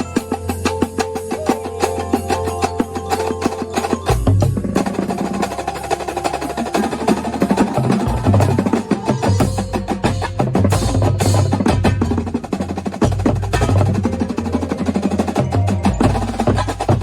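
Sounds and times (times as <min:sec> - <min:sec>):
keyboard percussion: 0:00.0 - 0:17.0
rapid drum strokes: 0:00.0 - 0:17.0
low bass line: 0:04.1 - 0:17.0.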